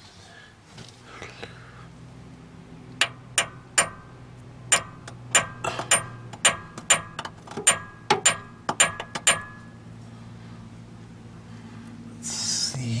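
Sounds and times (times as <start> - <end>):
hammer striking metal: 3.0 - 9.8.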